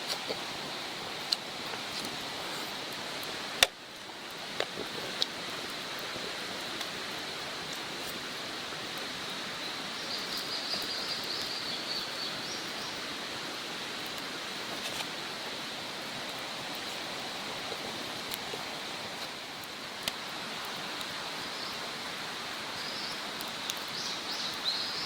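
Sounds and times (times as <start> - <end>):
wood fire crackling: 0.0 - 24.6
outdoor rushing hiss: 0.0 - 25.0.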